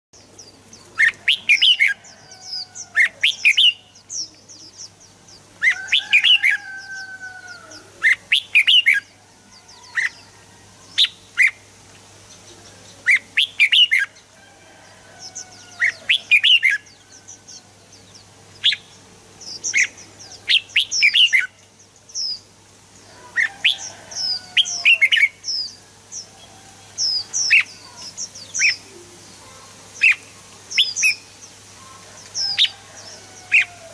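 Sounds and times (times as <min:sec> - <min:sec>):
faint steady hum: 0:00.2 - 0:33.9
bird singing whistled notes: 0:05.6 - 0:09.1, 0:19.5 - 0:21.6.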